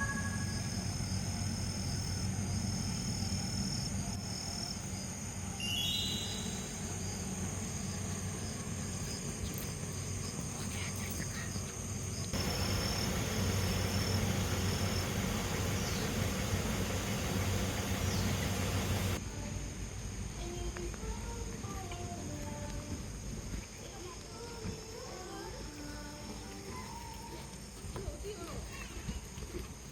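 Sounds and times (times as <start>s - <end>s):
steady low hum: 0.0s - 26.9s
insects chirping: 0.0s - 29.9s.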